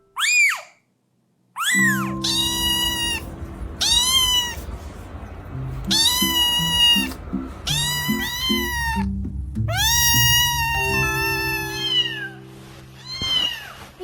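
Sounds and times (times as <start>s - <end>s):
kitten meowing: 1.6s - 4.7s, 5.8s - 9.1s, 9.7s - 12.4s, 13.0s - 13.9s
background music: 1.8s - 13.4s.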